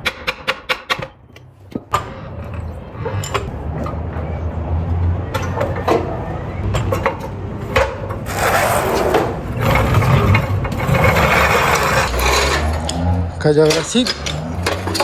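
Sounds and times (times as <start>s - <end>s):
metal rasping scrapes: 8.2s - 13.3s
metal parts knocking: 9.6s - 15.0s.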